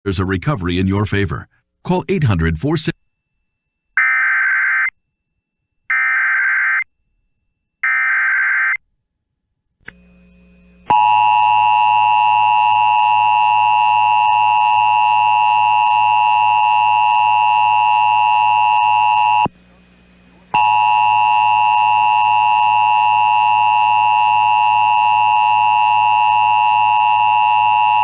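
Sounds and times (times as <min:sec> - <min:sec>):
loud steady alarm tone: 0:10.9 - 0:19.5, 0:20.6 - 0:28.0.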